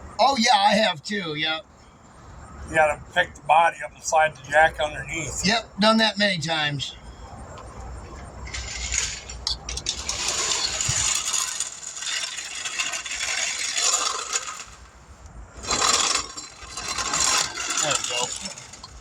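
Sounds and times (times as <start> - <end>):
metal parts clinking and scraping: 8.4 - 19.0.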